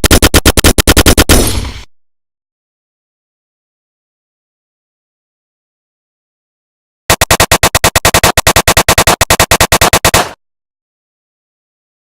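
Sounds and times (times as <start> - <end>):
automatic gunfire burst: 0.0 - 1.6, 7.1 - 10.4.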